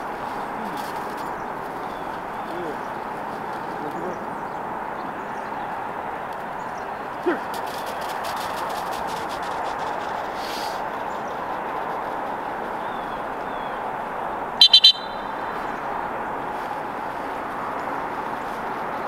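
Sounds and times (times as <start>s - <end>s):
dog training whistle blasts: 14.6s - 15.4s.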